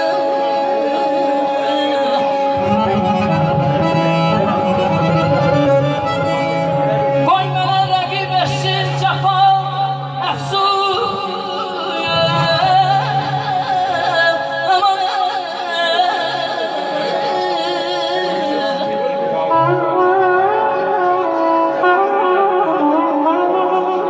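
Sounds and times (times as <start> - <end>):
person singing ornamented melody: 0.0 - 3.6
held accompanying tones: 0.0 - 9.2.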